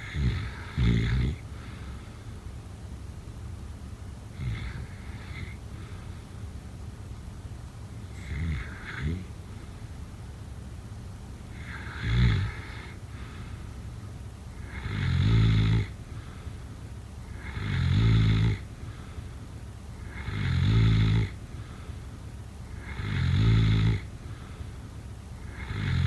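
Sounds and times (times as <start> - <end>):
person snoring: 0.0 - 1.8, 4.4 - 6.0, 8.1 - 9.4, 11.6 - 13.0, 14.6 - 15.9, 20.0 - 21.4, 22.8 - 24.0, 25.4 - 26.0.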